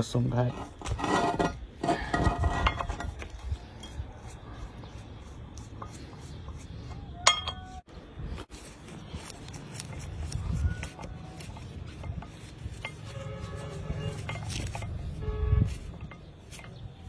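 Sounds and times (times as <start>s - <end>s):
metal tools clinking on bolts: 0.4s - 4.0s, 10.9s - 13.2s, 14.0s - 15.2s, 15.8s - 17.0s.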